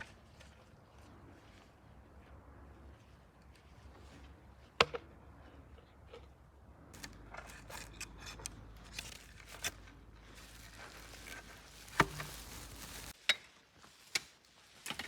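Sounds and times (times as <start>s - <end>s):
plastic netting clicks and rustles: 7.0s - 13.2s.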